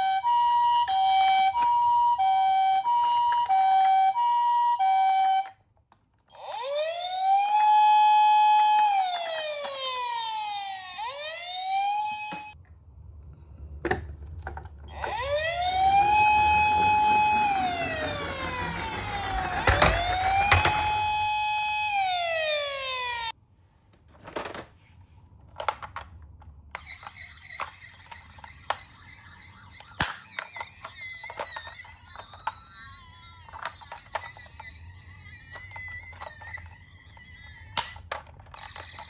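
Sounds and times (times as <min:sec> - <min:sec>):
toy electronic siren wailing: 0:00.0 - 0:05.6, 0:06.3 - 0:12.6, 0:14.9 - 0:23.4, 0:26.8 - 0:39.0
low rumble: 0:12.6 - 0:18.3.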